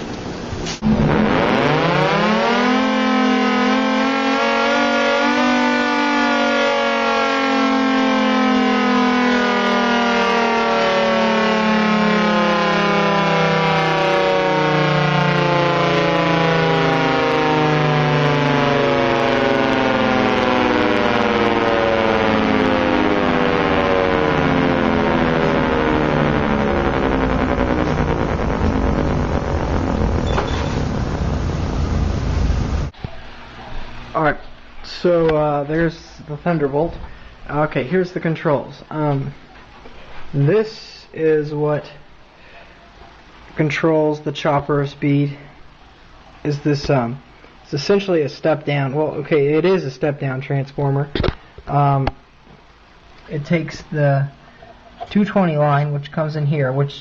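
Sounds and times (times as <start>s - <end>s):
tornado siren winding down: 0.0s - 40.6s.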